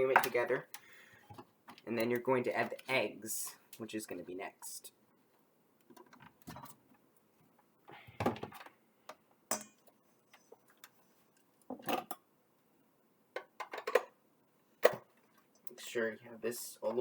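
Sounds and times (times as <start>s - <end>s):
kitchenware clinks and knocks: 13.4s - 14.1s.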